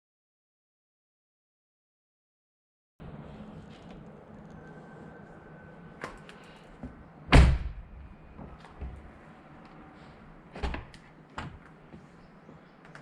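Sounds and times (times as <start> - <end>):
car door shutting with heavy thud: 7.3 - 7.8.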